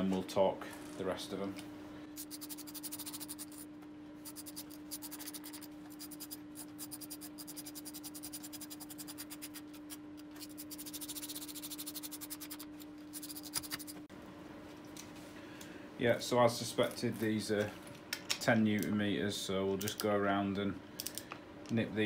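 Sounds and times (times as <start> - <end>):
steady hum: 0.0 - 18.0.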